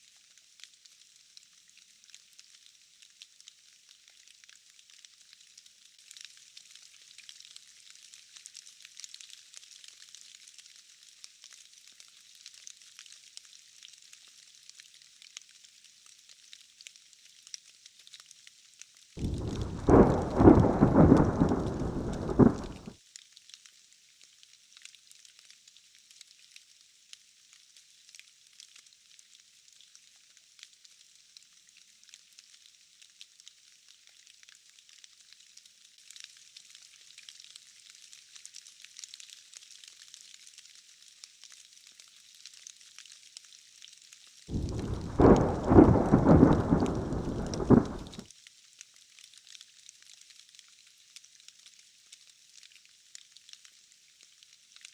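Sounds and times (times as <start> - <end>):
steady rain hiss: 19.2 - 22.9, 44.5 - 48.2
thunder rumble: 19.2 - 22.9, 44.5 - 48.2.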